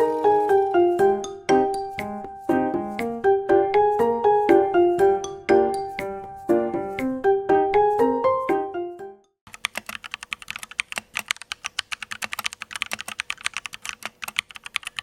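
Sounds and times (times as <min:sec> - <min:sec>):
mechanical keyboard typing: 0:09.5 - 0:15.0.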